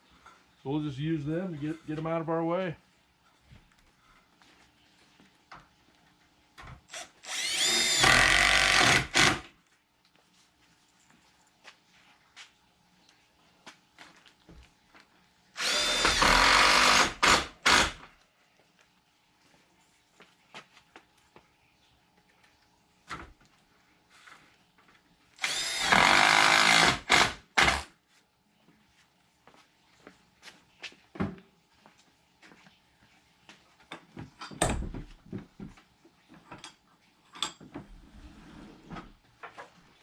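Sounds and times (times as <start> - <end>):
power drill driving screw: 6.9 - 9.5, 15.6 - 18.1, 25.4 - 27.9.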